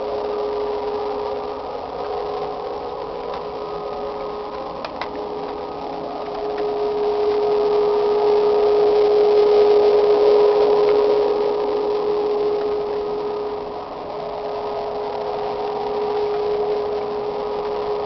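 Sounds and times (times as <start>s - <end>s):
loud pitched drone: 0.0s - 18.0s
faint clicks: 4.2s - 7.5s.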